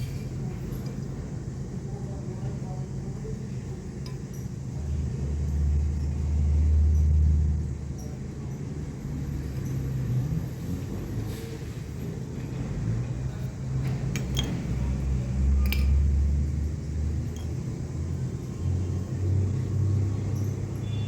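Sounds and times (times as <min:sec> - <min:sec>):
metal tools clinking: 0:14.1 - 0:14.8, 0:15.6 - 0:16.0, 0:17.3 - 0:17.6.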